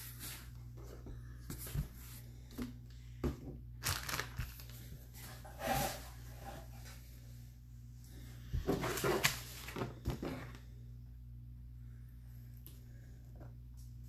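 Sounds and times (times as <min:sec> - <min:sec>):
packaging crinkling and rustling: 0:03.8 - 0:05.4.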